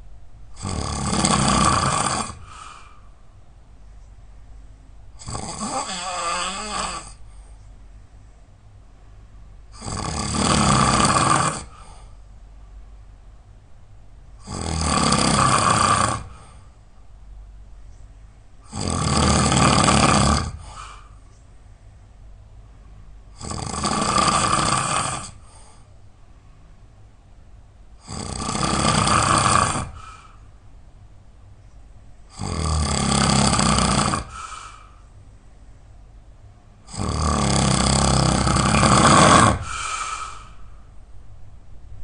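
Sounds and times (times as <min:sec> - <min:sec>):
person snoring loudly: 0:00.6 - 0:02.8, 0:05.2 - 0:07.2, 0:09.7 - 0:11.9, 0:14.4 - 0:16.5, 0:18.6 - 0:21.0, 0:23.3 - 0:25.5, 0:28.0 - 0:30.4, 0:32.3 - 0:34.9, 0:36.9 - 0:40.6.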